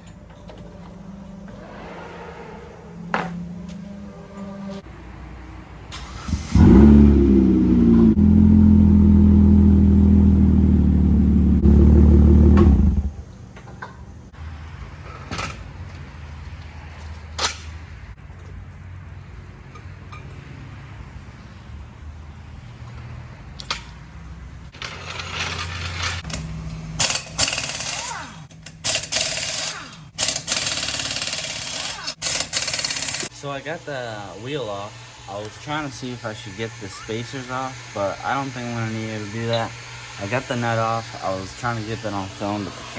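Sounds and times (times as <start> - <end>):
motor running loudly: 6.7 - 13.2.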